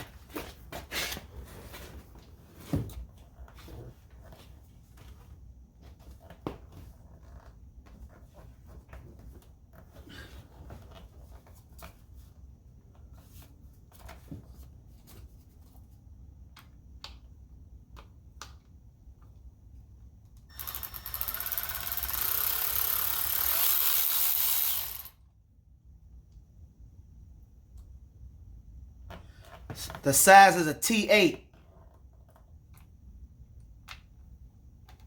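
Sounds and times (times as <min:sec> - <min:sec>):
cordless power driver running: 0:20.5 - 0:25.1.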